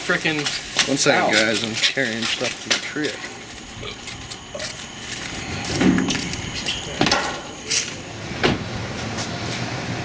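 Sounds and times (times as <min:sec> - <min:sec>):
items knocking and clunking: 0:05.7 - 0:07.5.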